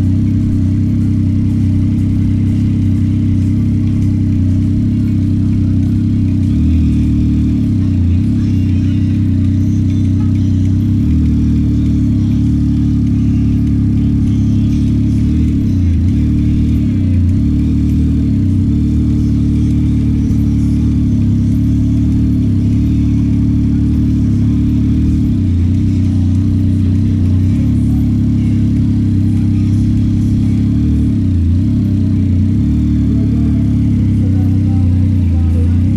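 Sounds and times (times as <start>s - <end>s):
motorcycle engine cruising: 0.0s - 35.9s.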